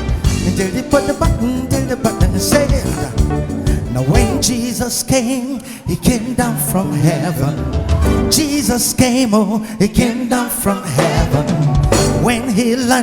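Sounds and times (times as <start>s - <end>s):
drums and percussion beat: 0.0s - 4.6s, 7.6s - 9.2s, 10.9s - 13.0s
person singing: 0.0s - 13.0s.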